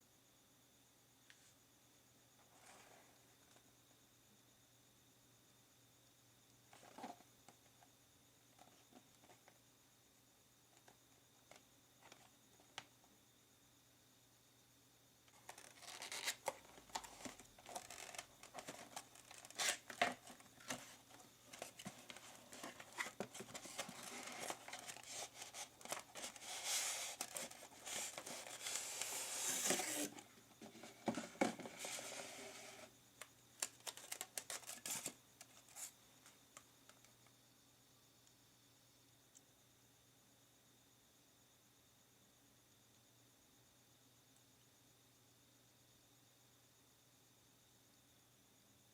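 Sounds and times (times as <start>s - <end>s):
packaging crinkling and tearing: 15.5s - 20.2s.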